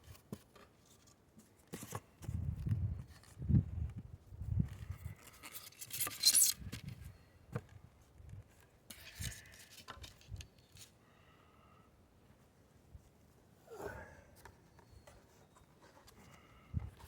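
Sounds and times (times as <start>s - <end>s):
rubbing and scraping: 4.8s - 6.6s.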